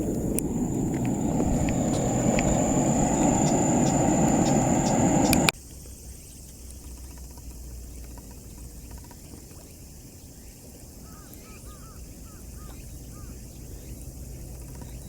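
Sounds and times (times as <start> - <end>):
bird chirping: 0.0 - 5.5
low rumble and hiss: 0.0 - 5.5.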